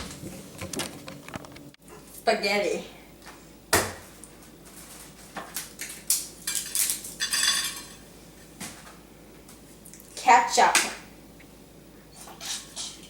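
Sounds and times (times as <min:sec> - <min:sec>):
cutlery and dishes clinking: 0:06.5 - 0:08.0, 0:12.2 - 0:13.0.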